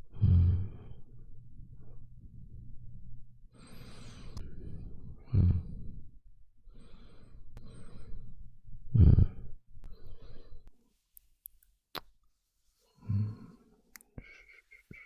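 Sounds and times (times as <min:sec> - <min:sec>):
man breathing deeply: 0:03.6 - 0:06.0, 0:06.7 - 0:08.4.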